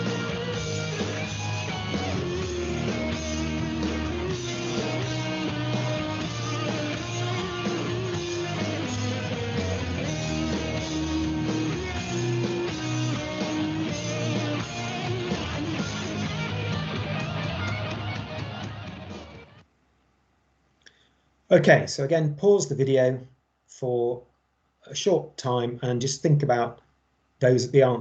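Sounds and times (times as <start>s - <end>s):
guitar plucked and strummed: 0.0s - 19.6s.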